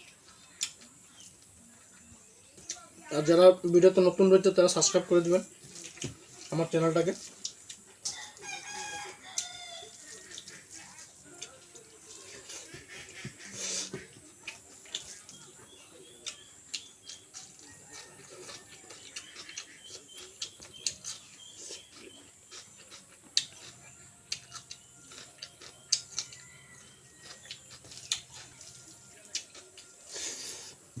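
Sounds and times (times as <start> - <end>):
mouth chewing and smacking: 5.5 - 6.6, 7.2 - 30.3
faint bird chirping: 9.3 - 31.0.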